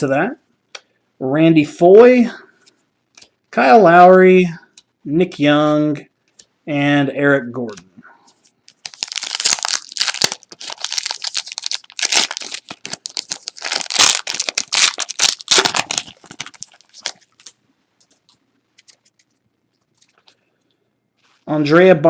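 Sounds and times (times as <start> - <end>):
wrapper tearing and crinkling: 8.7 - 17.6.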